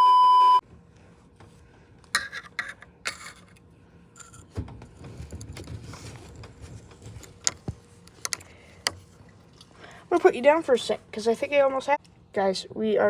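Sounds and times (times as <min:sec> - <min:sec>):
metal pick scraping and clicking: 0:02.2 - 0:03.6, 0:04.2 - 0:09.1.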